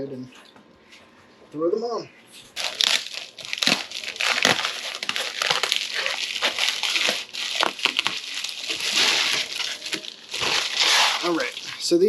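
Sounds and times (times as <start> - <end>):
packing material crinkling: 2.5 - 12.0.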